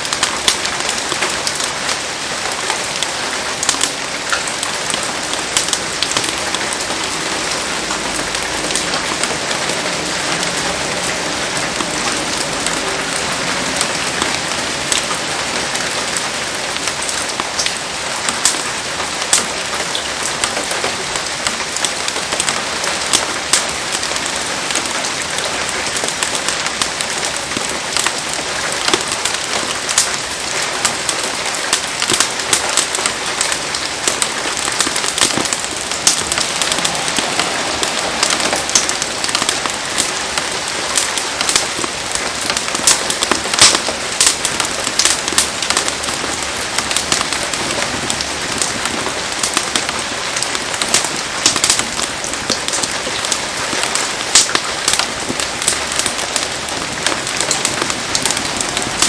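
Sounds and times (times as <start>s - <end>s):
heavy rain falling: 0.0s - 59.0s
raindrop ticks: 0.0s - 59.0s.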